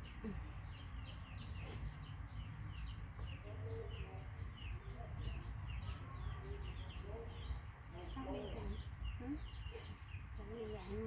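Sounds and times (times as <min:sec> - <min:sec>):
small bird chirping: 0:00.0 - 0:11.0.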